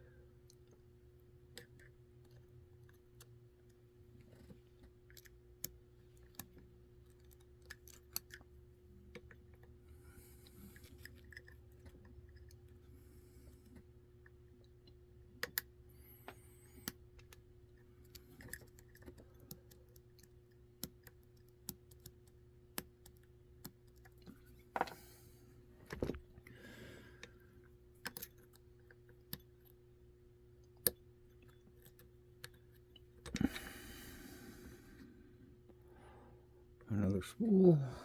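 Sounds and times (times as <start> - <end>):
light clicks of lock pins: 15.4 - 25.0.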